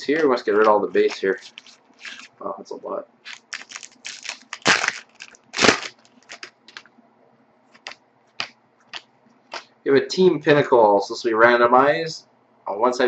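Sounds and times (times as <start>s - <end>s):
cards sliding and rustling: 0.1s - 2.3s.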